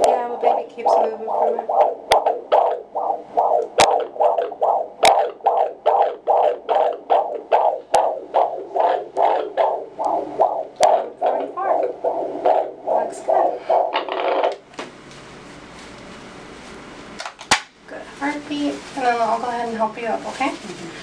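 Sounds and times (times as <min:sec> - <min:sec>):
fetal heartbeat pulses on doppler: 0:00.0 - 0:14.6.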